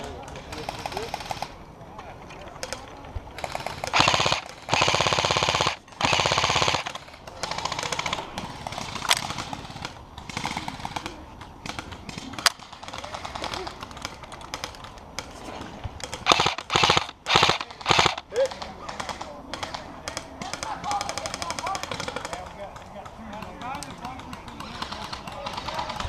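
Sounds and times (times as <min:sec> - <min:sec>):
airsoft rifle firing bursts: 0:03.4 - 0:14.8, 0:16.1 - 0:22.4, 0:24.1 - 0:26.0.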